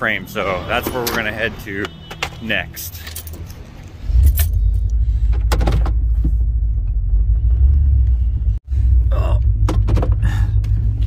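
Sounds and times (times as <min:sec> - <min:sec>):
car engine rumbling: 0:00.6 - 0:11.0
keys jingling: 0:02.2 - 0:04.9.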